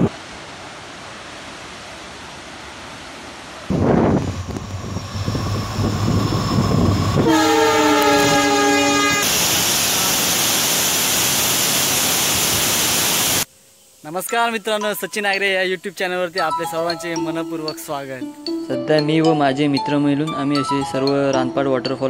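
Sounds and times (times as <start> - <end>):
steady rushing noise: 0.0 - 7.3
train rumbling: 3.6 - 13.5
train horn: 6.6 - 9.3.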